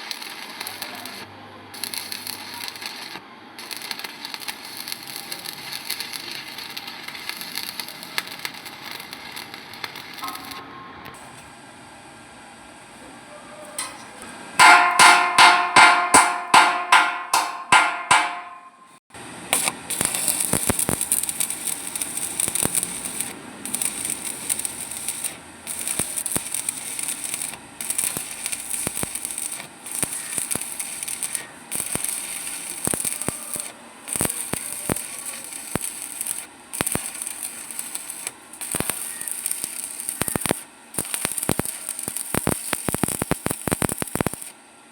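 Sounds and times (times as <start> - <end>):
arc welding crackling sizzle: 0.0 - 11.8, 19.2 - 44.9
ringing strikes on metal: 14.6 - 19.0.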